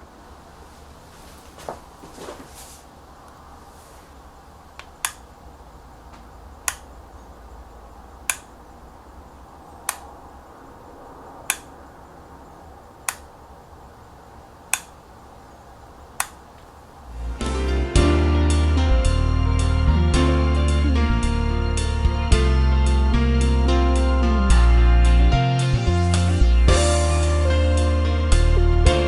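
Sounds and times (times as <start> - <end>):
lever switch clicks: 4.8 - 5.2, 6.6 - 6.9, 8.3 - 8.5, 9.9 - 10.1, 11.5 - 11.7, 13.0 - 13.3, 14.7 - 15.0, 16.2 - 16.4.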